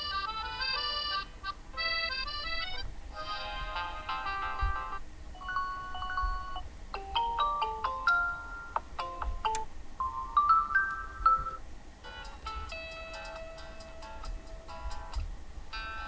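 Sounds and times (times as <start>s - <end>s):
phone ringtone melody: 5.4s - 12.3s.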